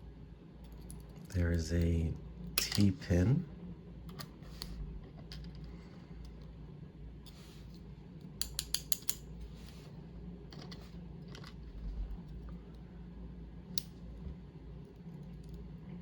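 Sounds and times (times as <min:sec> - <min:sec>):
low steady hum: 0:00.0 - 0:16.0
small metal clicks of lock pins: 0:08.4 - 0:09.2.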